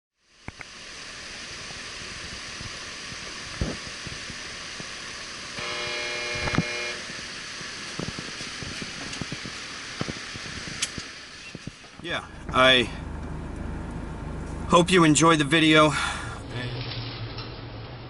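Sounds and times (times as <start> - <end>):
steady hissing noise: 0.2 - 12.8
held tone with overtones: 5.6 - 7.2.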